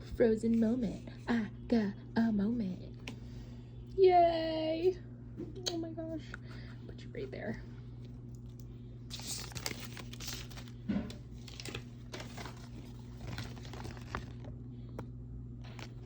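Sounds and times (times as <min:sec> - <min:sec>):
plastic crunch: 0:09.1 - 0:15.0, 0:15.6 - 0:16.0
plastic packaging crinkling: 0:09.1 - 0:15.0, 0:15.6 - 0:16.0.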